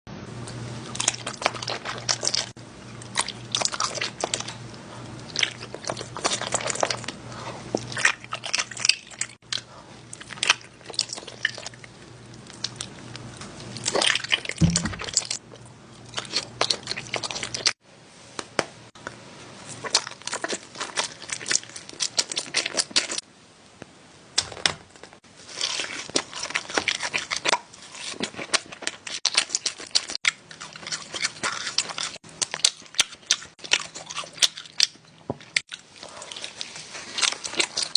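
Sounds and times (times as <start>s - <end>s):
person chewing crunchy food: 0.5s - 17.8s, 19.7s - 23.2s, 25.3s - 37.9s.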